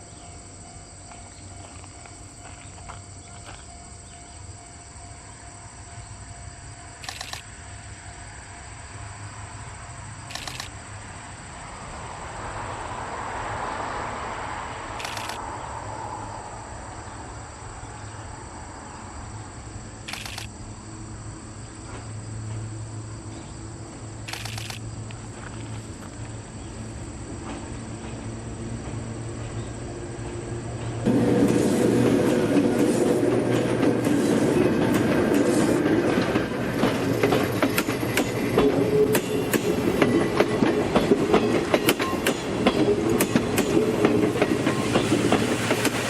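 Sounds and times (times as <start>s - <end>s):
crickets chirring: 0.0s - 46.0s
camera shutter clicking: 7.0s - 7.4s, 10.3s - 10.7s, 15.0s - 15.4s, 20.1s - 20.5s, 24.3s - 24.8s.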